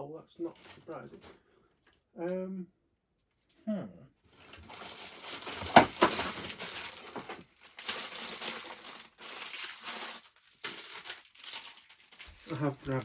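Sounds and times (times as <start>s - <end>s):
rustling plastic bags: 0.4s - 1.4s, 4.3s - 13.0s
small parts clattering: 4.4s - 13.0s.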